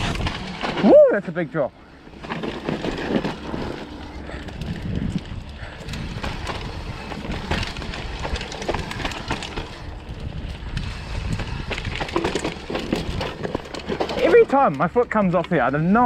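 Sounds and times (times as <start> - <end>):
mountain bike rattling on dirt trail: 0.0 - 16.0
wind rumbling on microphone: 2.6 - 14.1.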